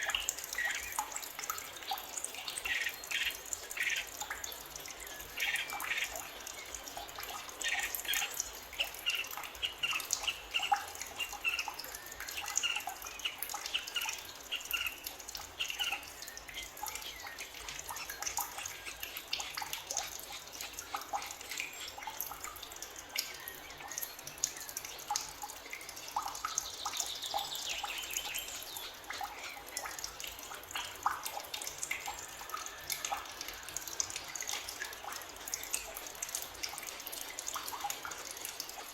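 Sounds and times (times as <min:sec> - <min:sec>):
forest birds chirping: 0:00.0 - 0:22.2, 0:26.4 - 0:30.2.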